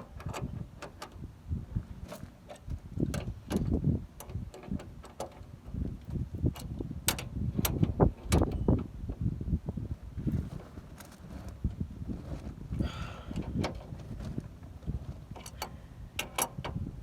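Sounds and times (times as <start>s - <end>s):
metallic clicks and knocks: 0.0s - 1.2s, 2.1s - 8.9s, 15.3s - 16.8s.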